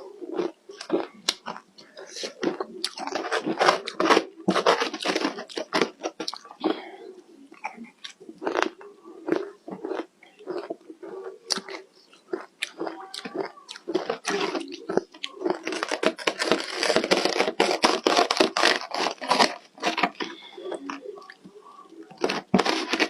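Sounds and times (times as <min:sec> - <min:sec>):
ice crunched between teeth: 0:11.5 - 0:20.9.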